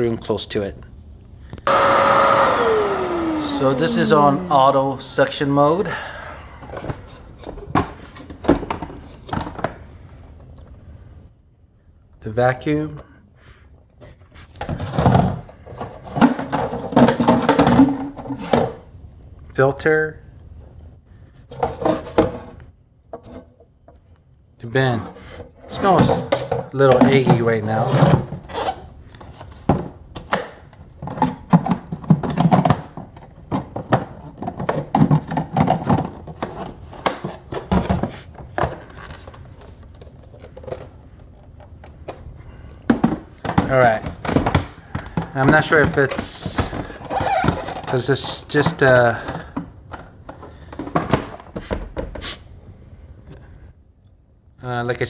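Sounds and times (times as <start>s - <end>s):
low steady hum: 0.0s - 27.8s
plastic parts clicking and knocking: 6.6s - 9.8s, 14.6s - 18.8s, 29.1s - 52.2s.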